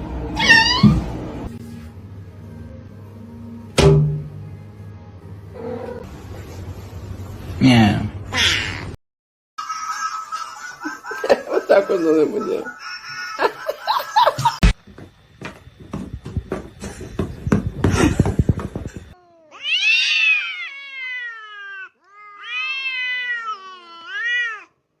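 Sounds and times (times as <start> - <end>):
cat meowing: 0.4 - 1.0, 19.2 - 24.7.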